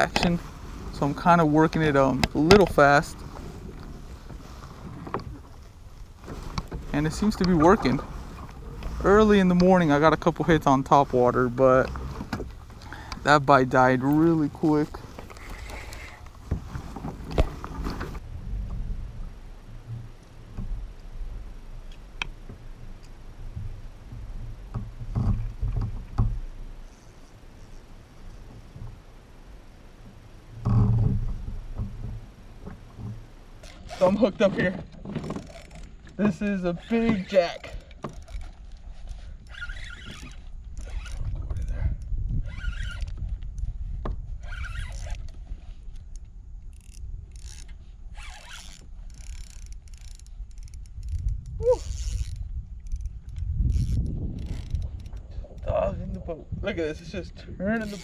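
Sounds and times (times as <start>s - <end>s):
bumps and knocks on kayak hull: 11.8s - 13.2s, 23.4s - 26.6s, 30.0s - 38.5s
low rumble: 16.3s - 27.0s
fishing reel drag buzzing: 36.6s - 41.3s, 42.4s - 43.2s, 44.4s - 45.3s, 46.7s - 55.3s, 57.8s - 58.0s.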